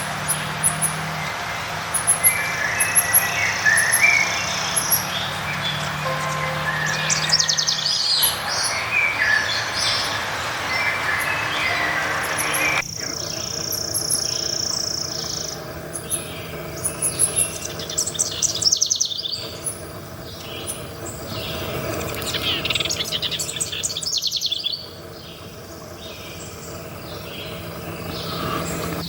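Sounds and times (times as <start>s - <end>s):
songbirds chirping: 0.0s - 29.0s
steady high tone: 6.0s - 9.2s, 10.9s - 13.0s.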